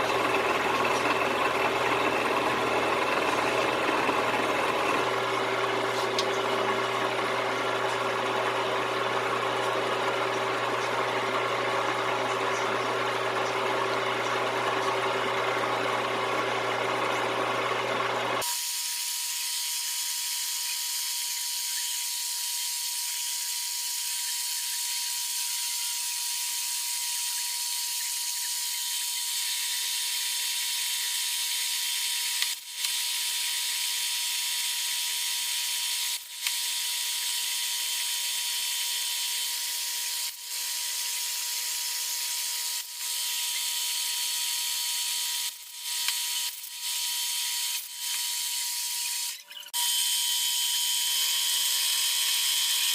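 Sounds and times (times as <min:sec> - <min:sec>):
power tool hissing and whining: 0:00.0 - 0:17.6.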